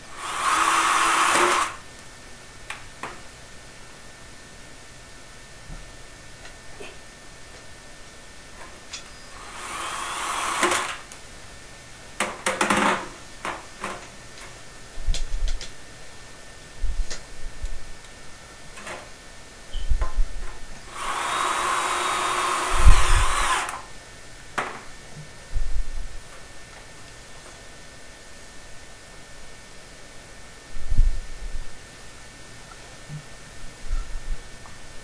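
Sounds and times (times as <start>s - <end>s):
screw gun motor: 0.1s - 1.8s, 9.3s - 11.1s, 20.9s - 23.9s.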